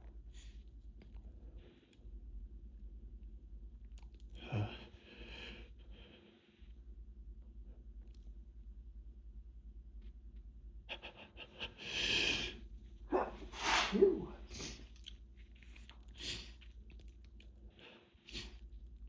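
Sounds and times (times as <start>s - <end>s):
person sneezing: 13.1s - 14.8s
short sniffs: 13.3s - 14.8s, 17.9s - 18.6s.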